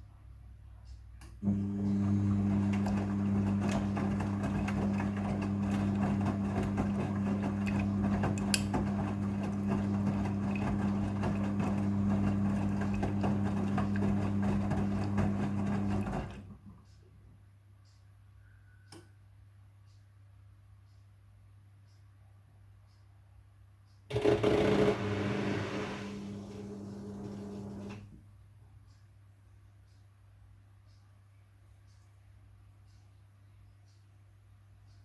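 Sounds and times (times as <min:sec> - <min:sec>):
washing machine humming: 0:01.4 - 0:16.6, 0:24.1 - 0:28.2.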